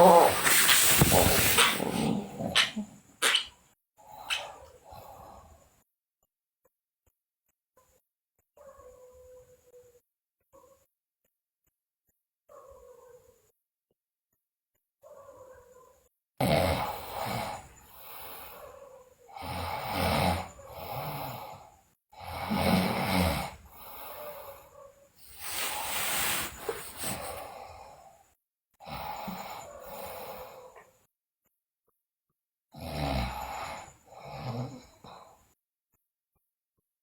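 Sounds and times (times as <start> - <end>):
woman snoring: 0.0 - 3.0, 16.4 - 18.5, 22.2 - 24.5, 25.3 - 28.0, 32.8 - 35.3.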